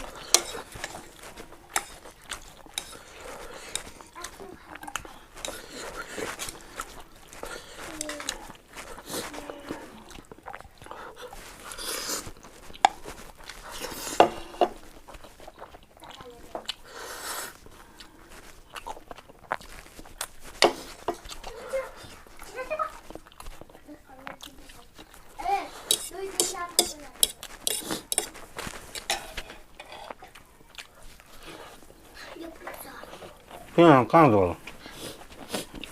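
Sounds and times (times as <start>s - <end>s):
utensils clinking against a bowl: 0.0s - 9.7s, 12.8s - 14.9s, 25.7s - 30.4s
noodle slurp: 0.0s - 23.8s, 24.4s - 32.4s
wet chewing: 0.0s - 35.9s.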